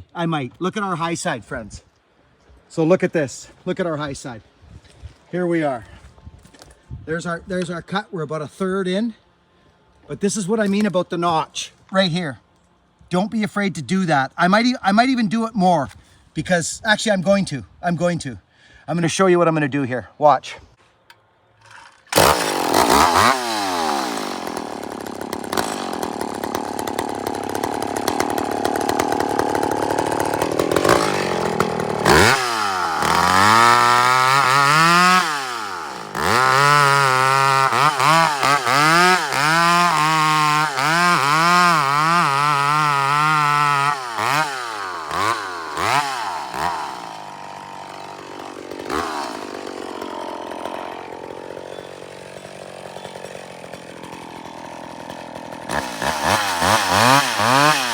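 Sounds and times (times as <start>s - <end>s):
chainsaw cutting: 21.6s - 57.9s.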